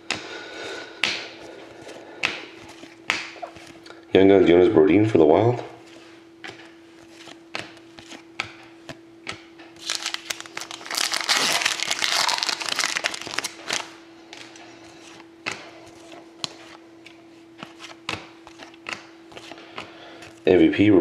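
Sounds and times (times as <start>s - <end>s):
wrapper tearing and crinkling: 9.8s - 14.0s.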